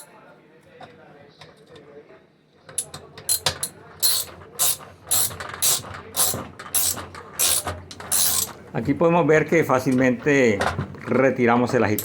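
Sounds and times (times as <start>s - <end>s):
ratchet wrench clicking: 2.8s - 8.5s.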